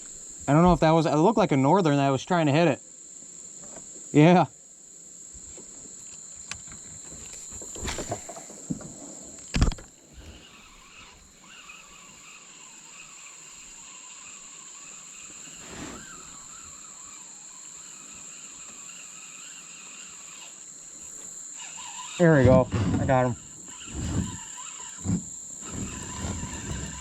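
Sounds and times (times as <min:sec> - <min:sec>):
insects chirring: 0:00.0 - 0:27.0.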